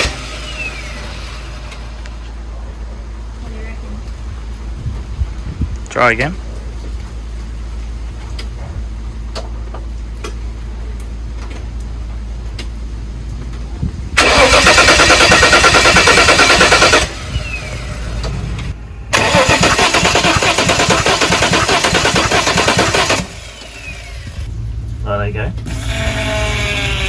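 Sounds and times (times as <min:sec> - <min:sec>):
starter motor cranking engine: 0:00.0 - 0:02.2, 0:14.2 - 0:24.5, 0:25.6 - 0:27.0
low steady hum: 0:23.2 - 0:27.0.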